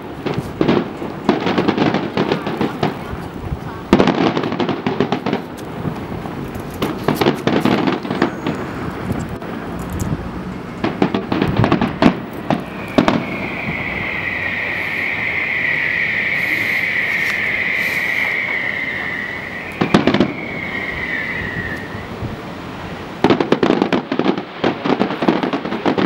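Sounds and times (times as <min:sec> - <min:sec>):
fireworks bursting and crackling: 0:00.0 - 0:26.0
high-pitched hiss: 0:12.2 - 0:23.1.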